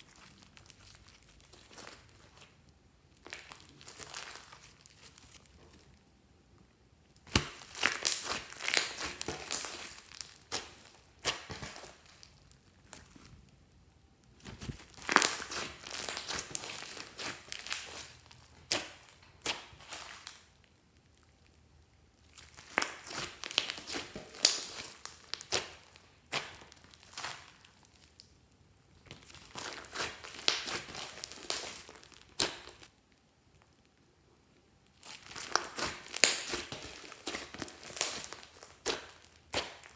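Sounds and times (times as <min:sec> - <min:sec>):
slime crackling and popping: 0:00.0 - 0:06.0, 0:07.2 - 0:28.4, 0:29.0 - 0:34.0, 0:34.8 - 0:39.9.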